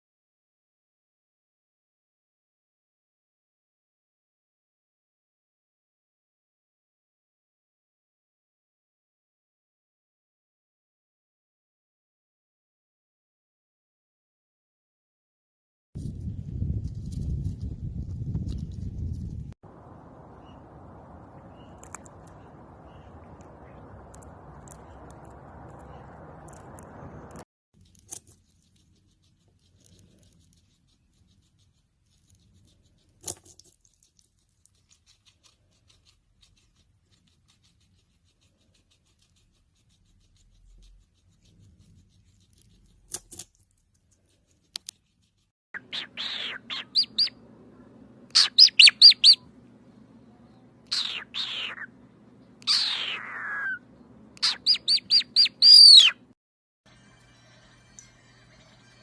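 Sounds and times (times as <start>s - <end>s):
bird calling and chirping: 20.1s - 27.3s, 45.8s - 47.4s, 48.4s - 49.5s, 50.9s - 52.0s, 52.6s - 56.3s
steady low hum: 47.3s - 48.4s.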